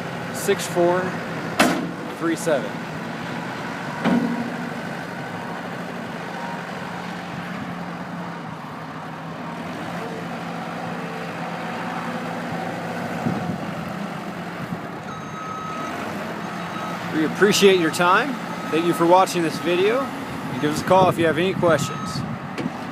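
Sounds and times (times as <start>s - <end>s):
diesel engine running: 0.0s - 22.9s.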